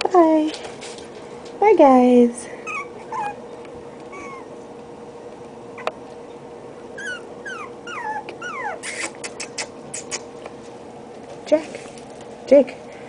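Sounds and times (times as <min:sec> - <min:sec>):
puppies whimpering: 0:02.6 - 0:03.5, 0:04.1 - 0:04.6, 0:06.9 - 0:10.1.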